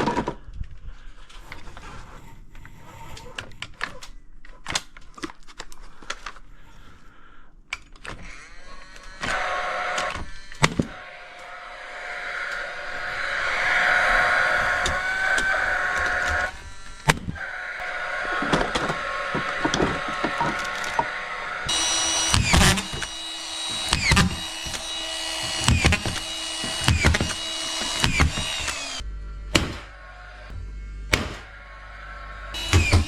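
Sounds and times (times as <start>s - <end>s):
screw gun motor whining: 7.8s - 29.1s, 32.5s - 33.0s
sharp knocks: 18.4s - 29.9s.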